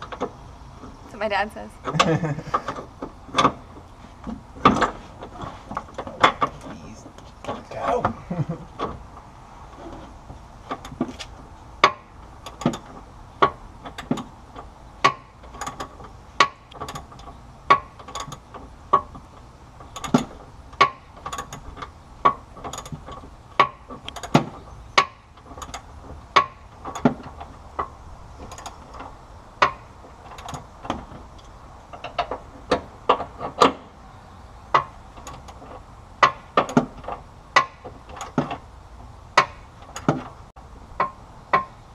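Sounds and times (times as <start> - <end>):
ratchet wrench clicking: 15.0 - 19.1, 19.8 - 21.9, 22.6 - 24.4, 25.0 - 27.1, 28.4 - 29.0.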